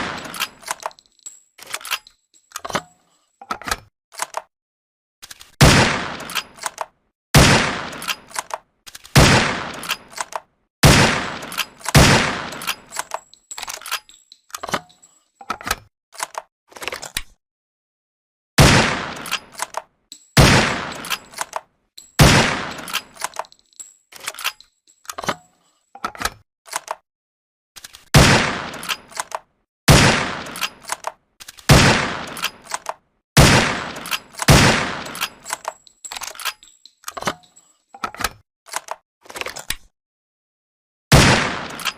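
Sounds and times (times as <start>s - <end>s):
rifle gunshots: 5.6s - 6.4s, 7.4s - 8.1s, 9.2s - 9.9s, 10.8s - 12.7s, 18.6s - 19.3s, 20.4s - 21.1s, 22.2s - 22.9s, 28.2s - 28.9s, 29.9s - 30.6s, 31.7s - 32.4s, 33.4s - 35.2s, 41.1s - 41.9s.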